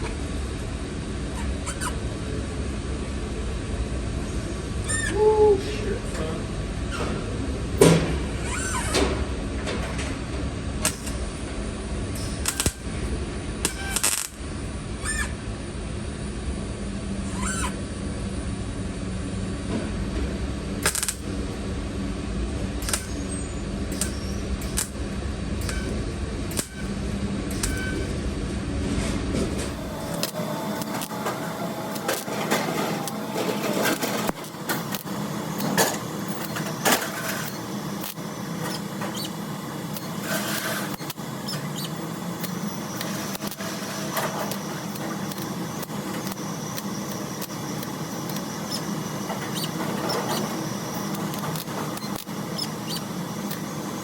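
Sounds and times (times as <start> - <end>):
shop noise: 0.0 - 54.0
welding arcs crackling: 10.5 - 15.2, 20.6 - 21.7, 22.4 - 28.6, 29.4 - 54.0.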